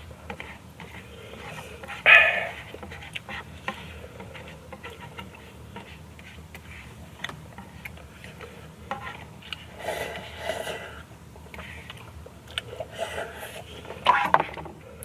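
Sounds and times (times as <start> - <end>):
utensils tapping a bowl: 0.0 - 10.8.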